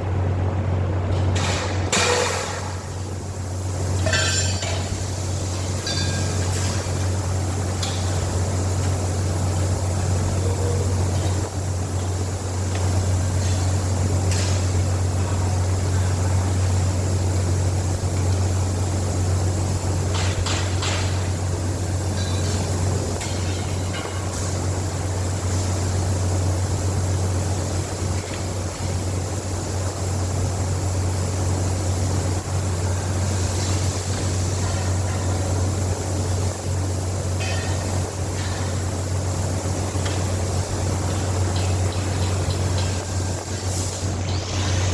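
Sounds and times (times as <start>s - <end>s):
constant hiss: 0.0s - 44.9s
steady low hum: 0.0s - 44.9s.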